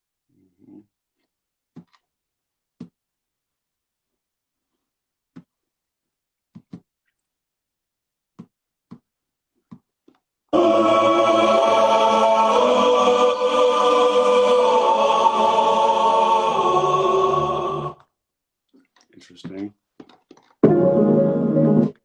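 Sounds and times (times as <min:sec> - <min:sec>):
choir-like music with held chords: 0:10.5 - 0:18.1.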